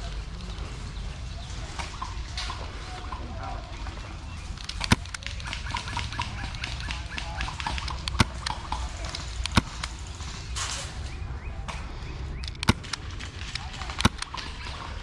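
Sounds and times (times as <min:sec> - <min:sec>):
faint ticks and snaps: 0:00.0 - 0:15.0
low outdoor rumble: 0:00.0 - 0:15.0
airsoft gun cracks: 0:04.5 - 0:15.0.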